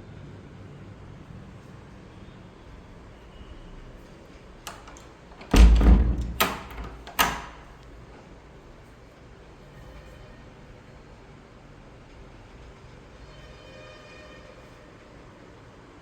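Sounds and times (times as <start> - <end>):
door thudding: 4.7 - 7.7
door banging: 4.7 - 7.8
door click: 4.7 - 7.9.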